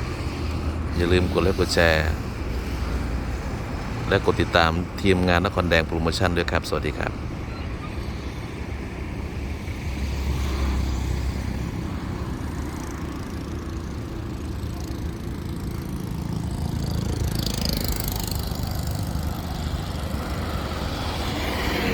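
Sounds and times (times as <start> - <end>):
low engine rumble: 0.0 - 21.9.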